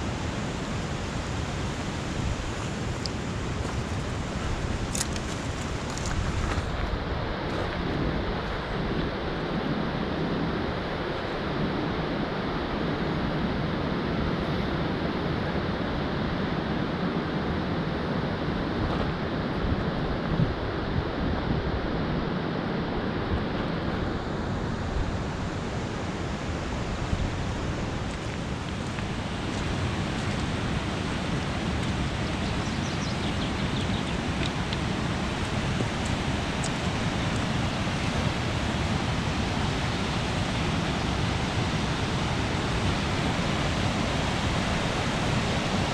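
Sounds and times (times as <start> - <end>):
falling water rushing: 0.0 - 9.4, 24.3 - 45.9
wind buffeting microphone: 0.0 - 11.8, 23.0 - 45.9.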